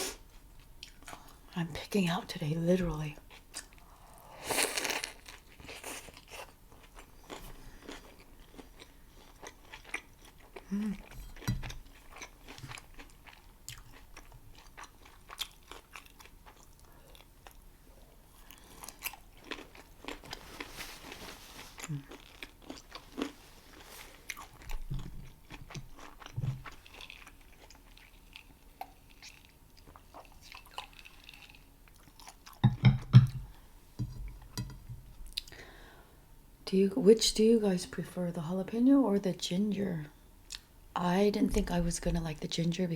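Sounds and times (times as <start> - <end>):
chewing and biting food: 4.8 - 17.6, 18.4 - 32.7.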